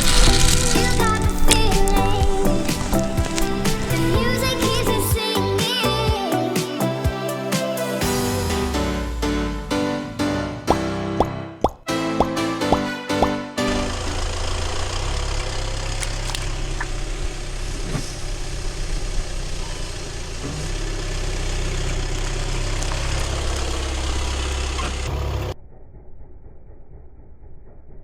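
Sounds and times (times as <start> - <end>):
objects cracking under wheels: 0.0 - 5.1, 13.7 - 25.6
tyre noise: 0.0 - 5.2, 13.8 - 25.6
car engine running: 0.0 - 5.6, 13.6 - 28.0.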